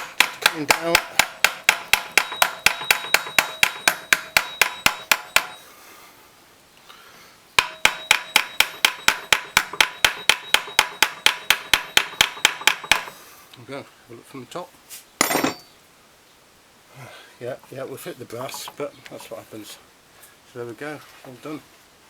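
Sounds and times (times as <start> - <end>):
small hammer tapping rivet: 0.0 - 5.6, 7.6 - 13.2.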